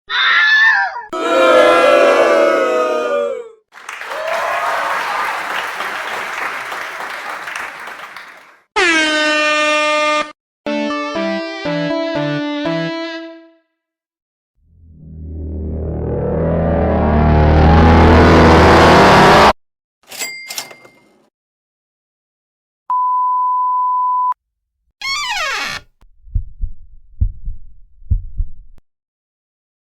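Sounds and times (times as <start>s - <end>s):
crowd cheering: 1.2s - 8.6s
censor bleep: 22.9s - 24.4s
heartbeat thumps: 26.0s - 28.8s.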